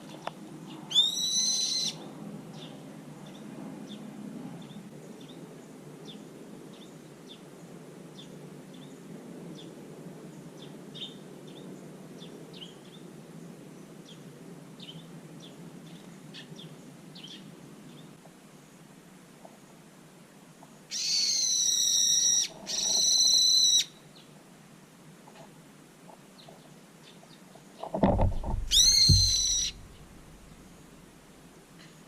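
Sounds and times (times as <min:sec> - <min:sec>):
low background hum: 0:28.1 - 0:31.7
bird chirping: 0:28.2 - 0:30.9.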